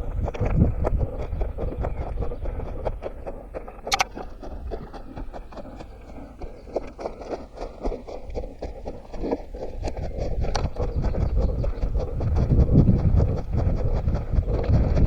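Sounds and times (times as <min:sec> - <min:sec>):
running footsteps on forest ground: 0:00.0 - 0:15.0
wind rumble: 0:00.0 - 0:15.0
sharp click: 0:03.9 - 0:04.1.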